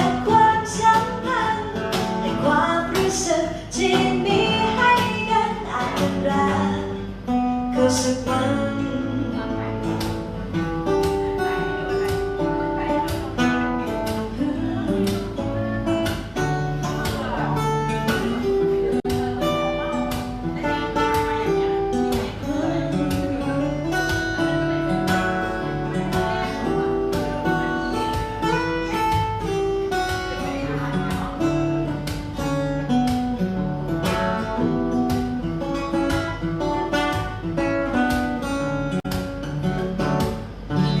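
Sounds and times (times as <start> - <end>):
acoustic guitar playing: 0.0 - 41.0.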